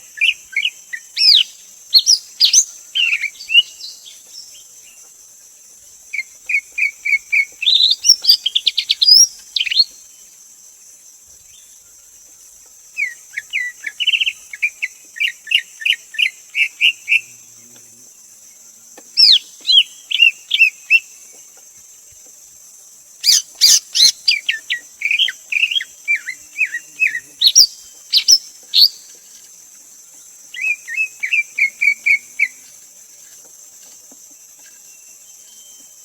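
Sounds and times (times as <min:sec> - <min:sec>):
bird singing whistled notes: 0:00.0 - 0:04.6, 0:06.2 - 0:10.1, 0:19.2 - 0:21.1, 0:23.2 - 0:29.1, 0:30.5 - 0:32.6, 0:34.6 - 0:36.0.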